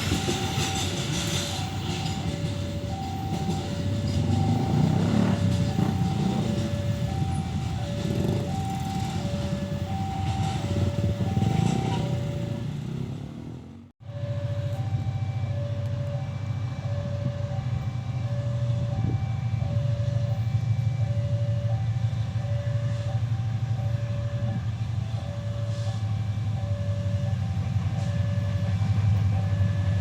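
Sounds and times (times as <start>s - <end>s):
level crossing alarm beeping: 0.0s - 13.1s.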